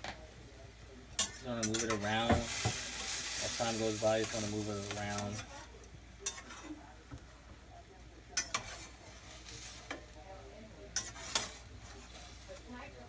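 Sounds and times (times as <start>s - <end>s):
steak sizzling in a frying pan: 0.0s - 6.7s, 8.4s - 13.0s
utensil tapping and scraping pan: 1.2s - 7.3s, 8.4s - 10.2s, 11.0s - 12.4s.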